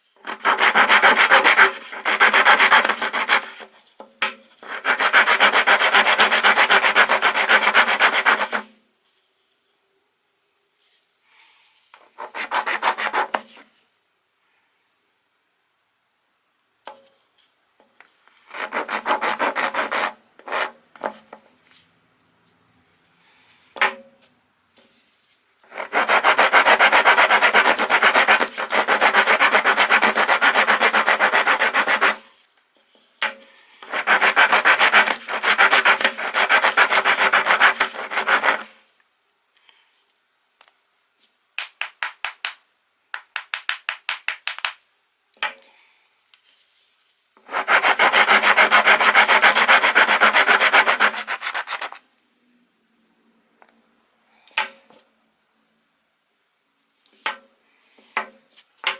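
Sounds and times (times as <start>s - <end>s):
wood rasp filing wood: 0.3s - 3.7s, 4.6s - 8.6s, 12.2s - 13.4s, 18.5s - 20.7s, 25.7s - 32.3s, 33.8s - 38.7s, 47.5s - 52.0s.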